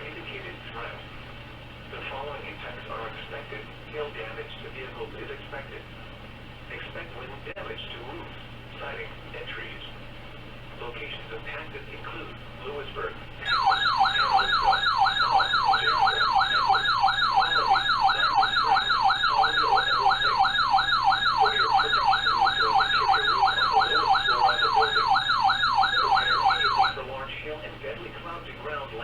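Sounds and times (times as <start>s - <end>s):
faint low hum: 0.0s - 29.0s
warbling siren alert: 13.4s - 27.0s.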